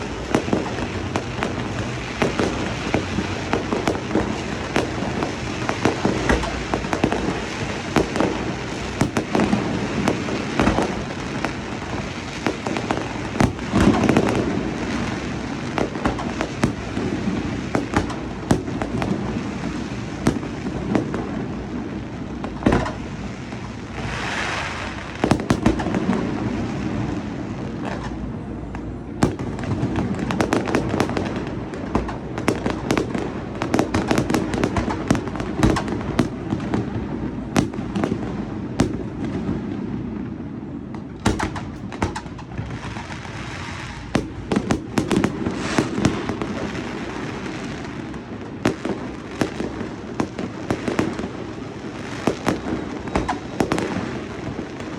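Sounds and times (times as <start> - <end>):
hissing crackle: 0.0 - 28.2
fireworks bangs and pops: 0.0 - 54.9.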